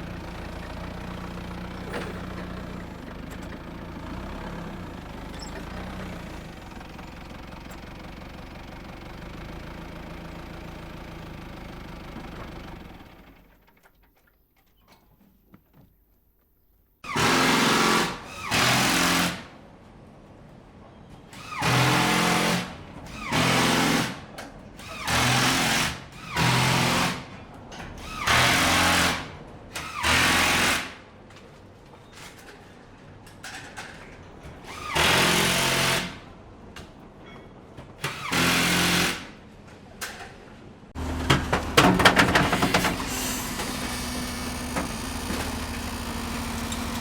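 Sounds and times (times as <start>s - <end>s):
construction machine engine running: 0.0s - 13.6s, 40.9s - 47.0s
power tool running in bursts: 42.1s - 47.0s.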